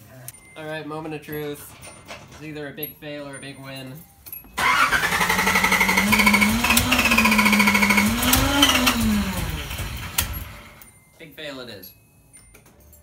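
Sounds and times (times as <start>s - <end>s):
starter motor cranking engine: 4.6s - 10.8s.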